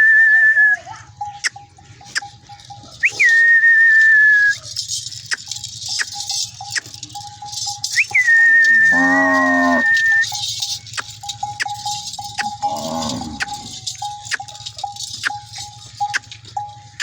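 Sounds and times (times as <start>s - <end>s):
loud whistled notes: 0.0s - 0.8s, 3.0s - 4.6s, 7.9s - 10.4s.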